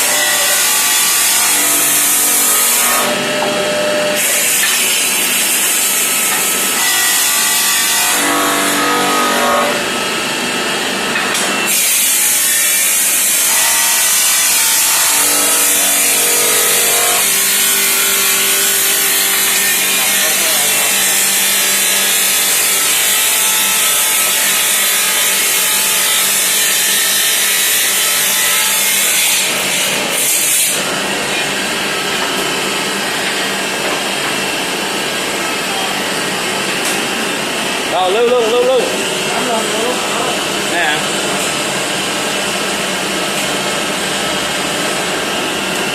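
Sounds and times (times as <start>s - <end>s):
tile cutter grinding: 0.0s - 10.0s, 11.1s - 37.1s.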